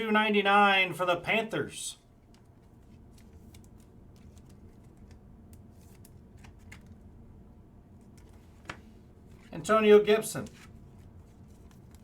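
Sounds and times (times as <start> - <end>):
low steady hum: 0.0 - 12.0
trading cards being flipped: 2.2 - 7.0.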